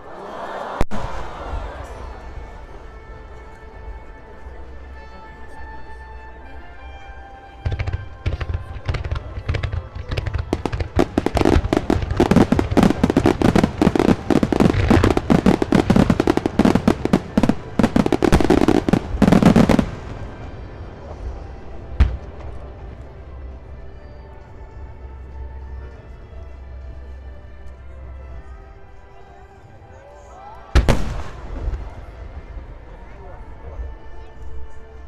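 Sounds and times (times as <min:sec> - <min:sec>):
fireworks bangs and crackles: 0:07.6 - 0:23.2, 0:30.7 - 0:33.2.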